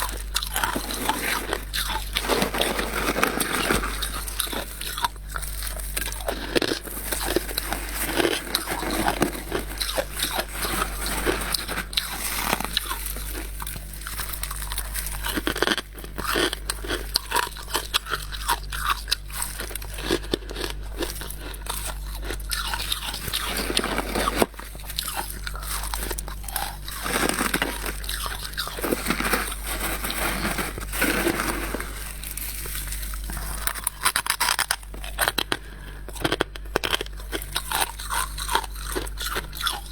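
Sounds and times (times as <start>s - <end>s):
crunching and chewing frost: 0.0s - 39.9s.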